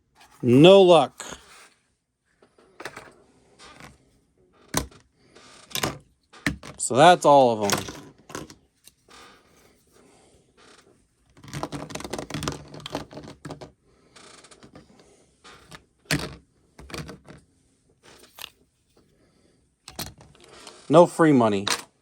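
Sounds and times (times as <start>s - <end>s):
plastic clicks and rattles: 11.3s - 13.7s, 15.5s - 17.4s.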